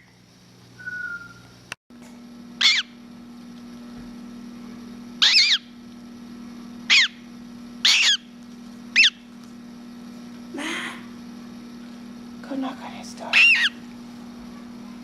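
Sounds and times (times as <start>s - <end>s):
steady low hum: 0.0s - 15.0s
gull chick peeping: 9.0s - 9.2s.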